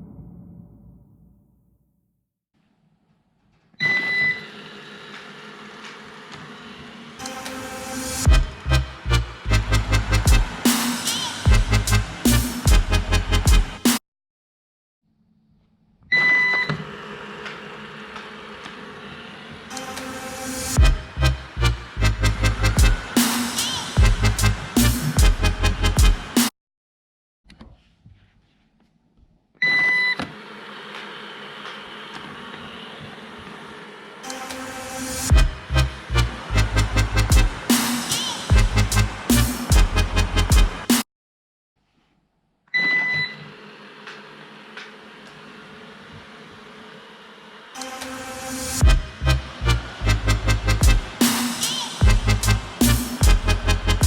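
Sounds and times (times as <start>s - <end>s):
electronic music: 7.2s - 14.0s, 19.7s - 26.5s, 34.2s - 41.0s, 47.8s - 54.0s
punchy kick drums: 8.3s - 8.6s, 10.3s - 10.6s, 11.5s - 13.8s, 20.8s - 21.0s, 22.8s - 23.0s, 24.0s - 24.3s, 24.9s - 25.4s, 26.0s - 26.2s, 35.3s - 35.6s, 37.3s - 37.6s, 38.5s - 39.0s, 39.7s - 40.8s, 48.8s - 49.2s, 50.8s - 51.1s, 52.0s - 53.5s.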